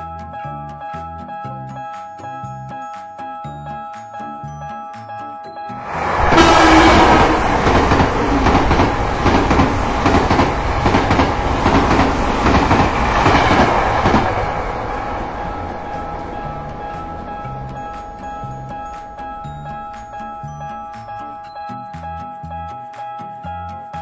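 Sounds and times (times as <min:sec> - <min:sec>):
train wheels clattering: 0:05.9 - 0:20.3.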